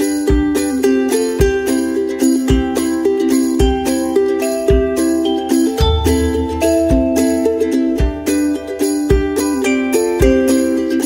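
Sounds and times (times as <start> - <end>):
plucked and chiming music: 0.0 - 11.0
low thump: 5.8 - 8.1.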